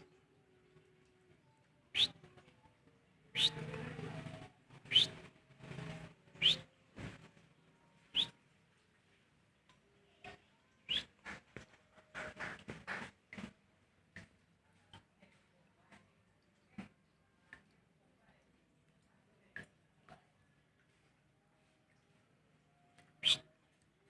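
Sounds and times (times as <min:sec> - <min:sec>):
lovebirds chirping: 0:03.4 - 0:03.6, 0:04.9 - 0:05.1, 0:06.4 - 0:06.6, 0:23.2 - 0:23.4.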